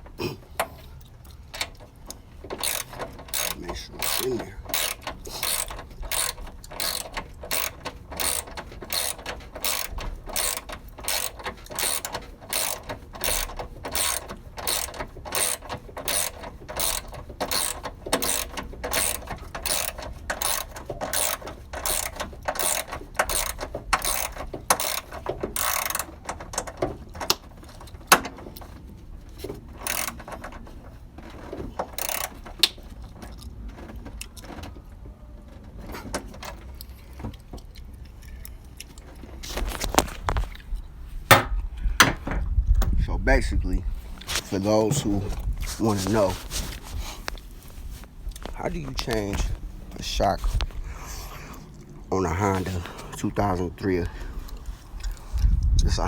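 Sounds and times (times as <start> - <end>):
ratchet wrench clicking: 2.4 - 26.7, 29.8 - 30.2, 31.9 - 32.4.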